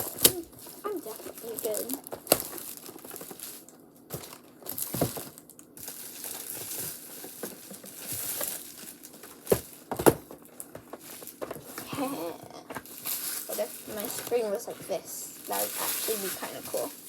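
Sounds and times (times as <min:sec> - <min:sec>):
plastic packaging crinkling: 0:00.0 - 0:17.0.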